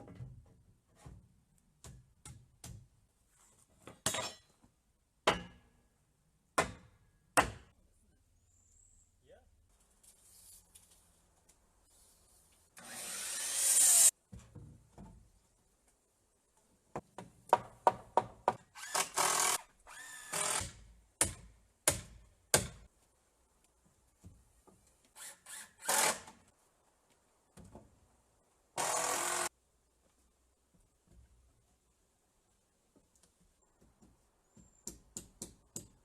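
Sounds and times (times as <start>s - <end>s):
power drill driving screws: 12.8s - 14.1s, 18.8s - 20.6s, 25.2s - 26.3s, 28.8s - 29.5s.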